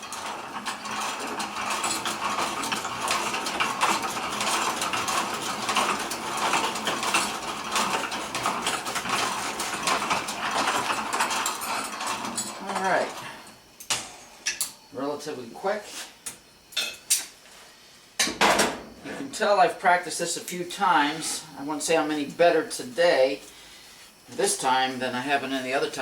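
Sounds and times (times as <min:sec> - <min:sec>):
hand-cranked drill clicking and rattling: 0:00.0 - 0:13.2.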